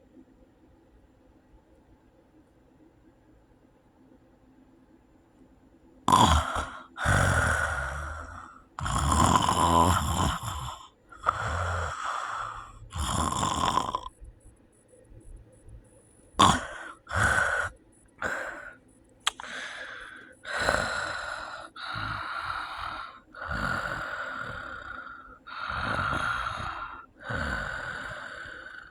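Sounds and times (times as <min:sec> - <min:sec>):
loud gasping snore: 0:06.1 - 0:14.1, 0:16.4 - 0:28.9
person snoring loudly: 0:06.1 - 0:14.1, 0:16.4 - 0:18.7, 0:19.3 - 0:28.9.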